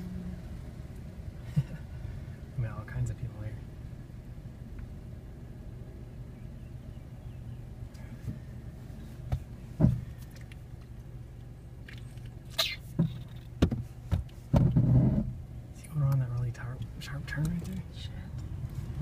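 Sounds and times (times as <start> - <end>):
car engine and road noise: 0.0 - 19.0
short knocks: 12.9 - 15.3.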